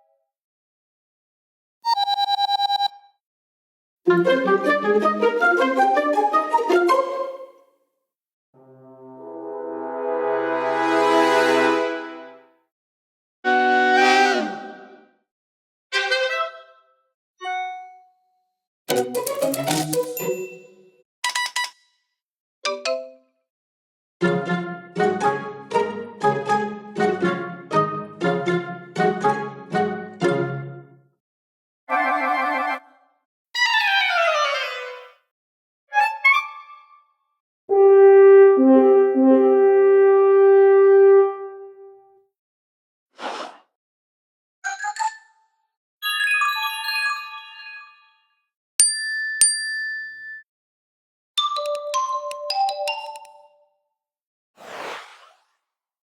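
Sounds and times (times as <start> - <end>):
chime of several notes: 20.2 - 21.0
sharp dings: 48.8 - 50.4.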